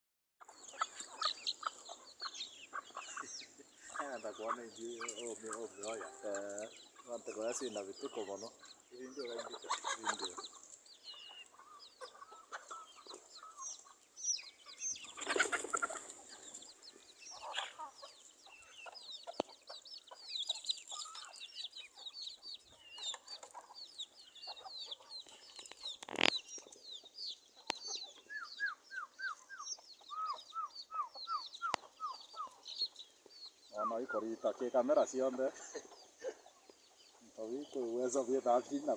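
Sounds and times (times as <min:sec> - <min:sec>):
chickens clucking: 0:00.4 - 0:38.9
chicks peeping: 0:00.4 - 0:38.9
chicken squawking: 0:17.3 - 0:18.1.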